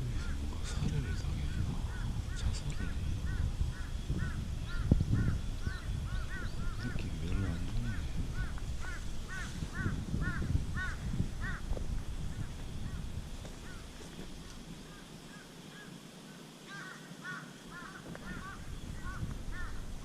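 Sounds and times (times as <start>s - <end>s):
low rumble: 0.0s - 14.6s.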